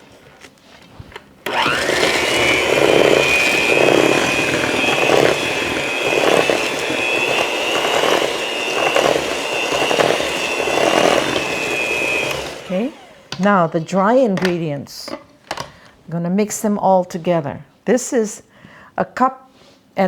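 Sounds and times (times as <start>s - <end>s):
electric mixer motor whine: 1.5s - 13.4s.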